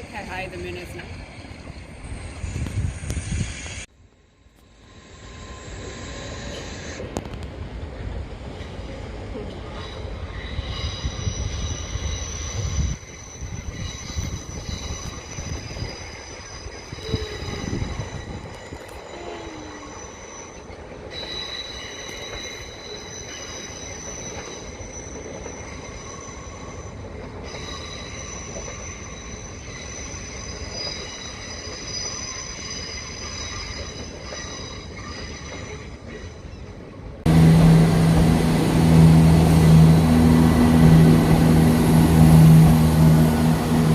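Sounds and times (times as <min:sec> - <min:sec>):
train wheels squealing: 0:04.7 - 0:07.1, 0:09.4 - 0:37.0
deep engine sound: 0:37.3 - 0:43.9.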